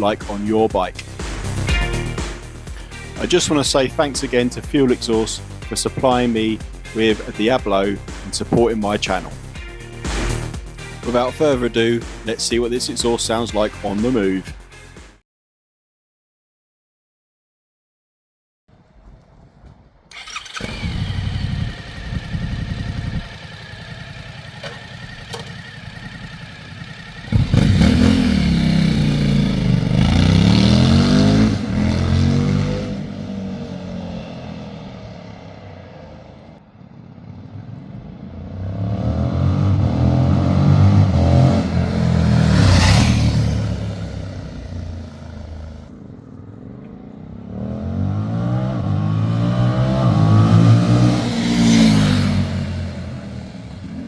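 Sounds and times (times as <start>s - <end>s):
motorcycle engine passing by: 20.1s - 54.0s.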